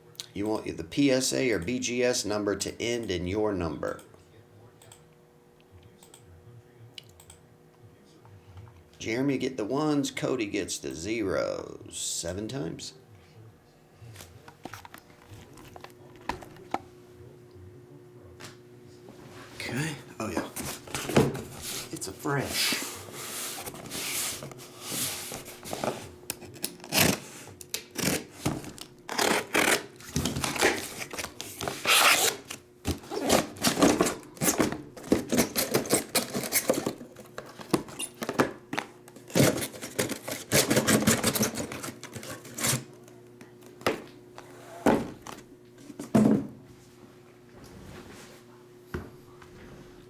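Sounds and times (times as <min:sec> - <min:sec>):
faint steady hum: 0:00.0 - 0:50.0
packaging rustling and tearing: 0:23.3 - 0:38.4, 0:39.2 - 0:42.9.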